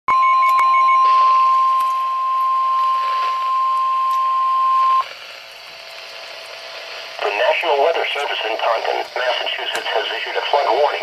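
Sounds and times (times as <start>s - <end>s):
steady high alert tone: 0.1s - 5.1s
faint radio hiss: 5.0s - 11.0s.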